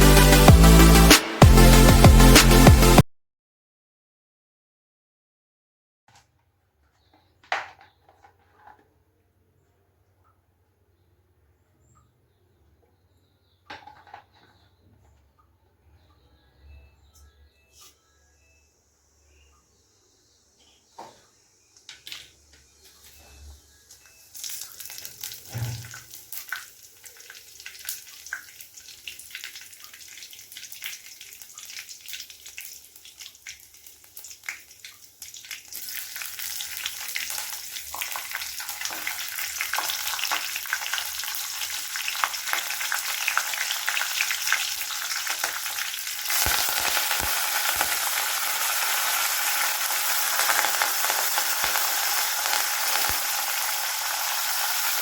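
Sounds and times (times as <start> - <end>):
food sizzling in hot oil: 24.3 - 55.0.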